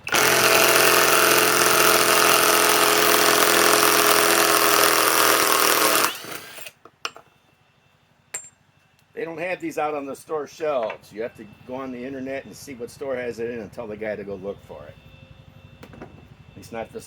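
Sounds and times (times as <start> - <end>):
impact wrench running: 0.0 - 6.7.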